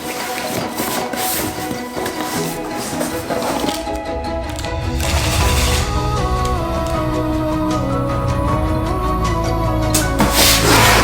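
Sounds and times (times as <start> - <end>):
steady bass: 3.9 - 10.7.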